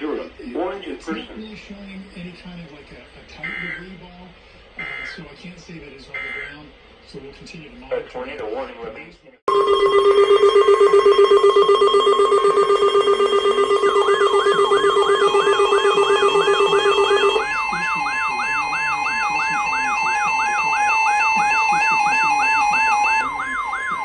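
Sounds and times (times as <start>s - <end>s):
pulsing buzzing alarm tone: 9.5s - 24.0s
steady high tone: 9.5s - 24.0s
trilling two-note beep: 9.5s - 24.0s
repeating electronic whoop: 10.6s - 24.0s.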